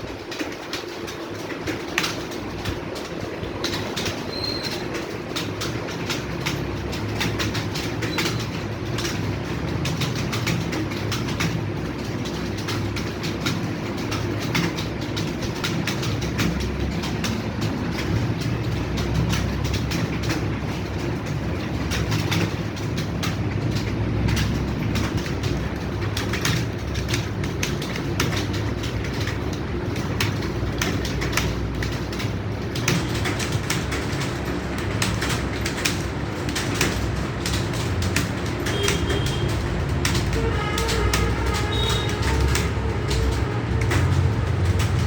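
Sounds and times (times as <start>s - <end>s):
keyboards clattering: 0.0s - 45.0s.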